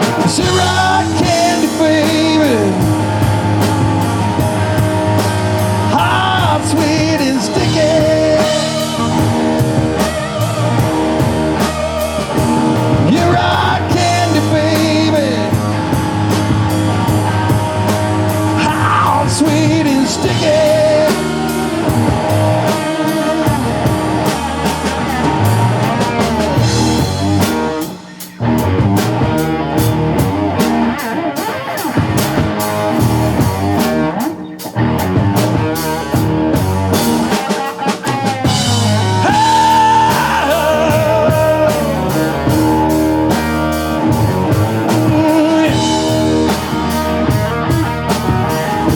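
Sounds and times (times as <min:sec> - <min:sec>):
person singing: 0:00.0 - 0:04.0, 0:05.8 - 0:17.5, 0:18.5 - 0:26.7, 0:37.6 - 0:47.7
live rock band playing: 0:00.0 - 0:48.9
steady drum hits: 0:38.1 - 0:48.9.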